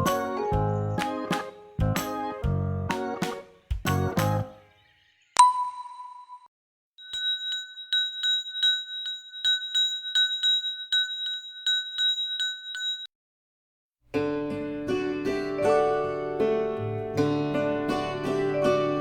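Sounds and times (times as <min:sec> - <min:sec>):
bell rung rapidly: 0:07.0 - 0:13.1.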